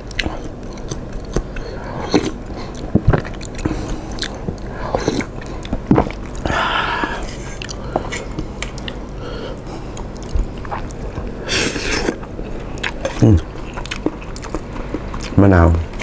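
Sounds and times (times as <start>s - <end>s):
person chewing noodles: 0.0s - 16.0s.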